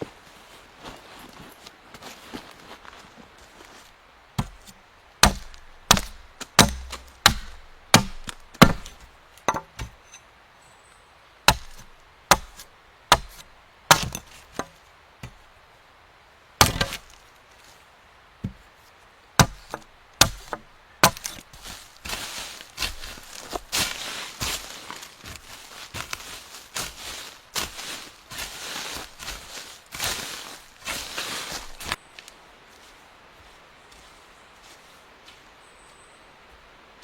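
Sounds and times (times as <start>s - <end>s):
axe chopping wood: 4.4s - 10.0s, 11.5s - 15.4s, 16.6s - 17.2s, 19.4s - 32.0s.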